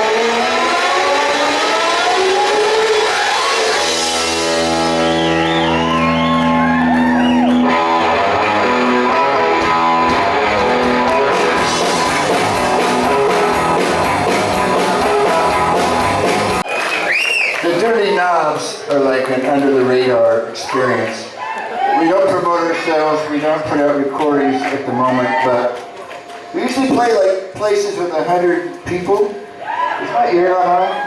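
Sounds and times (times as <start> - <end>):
electric guitar bending notes: 0.0 - 16.6
drums: 0.0 - 17.8
live rock band playing: 2.4 - 16.6.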